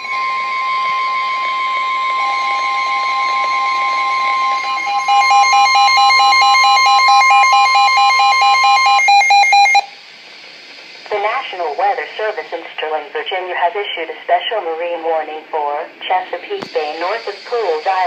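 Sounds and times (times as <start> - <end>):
high electronic warning tone: 0.0 - 9.9
rapid electronic beeping: 0.0 - 9.9.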